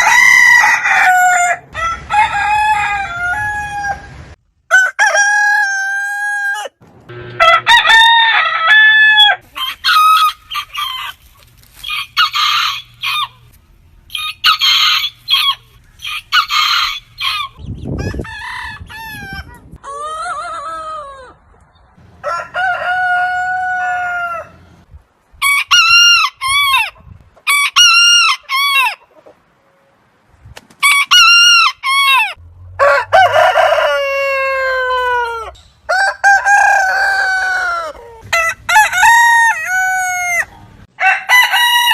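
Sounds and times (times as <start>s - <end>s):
roosters crowing: 0.0s - 13.5s, 14.1s - 29.1s, 30.8s - 41.9s
chickens clucking: 9.4s - 18.2s, 28.5s - 30.7s.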